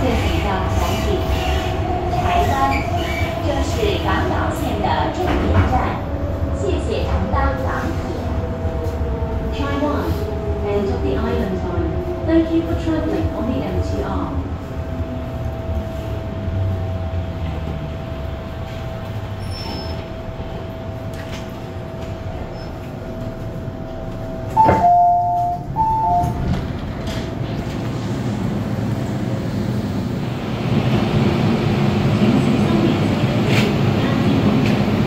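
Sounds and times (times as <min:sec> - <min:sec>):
train equipment hum: 0:00.0 - 0:35.0
high-low door chime beeps: 0:24.6 - 0:26.5.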